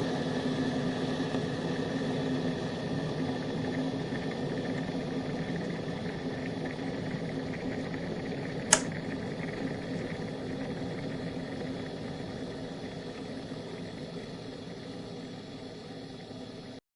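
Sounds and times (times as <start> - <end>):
kettle boiling: 0.0 - 16.8
kettle switch click: 8.7 - 9.0.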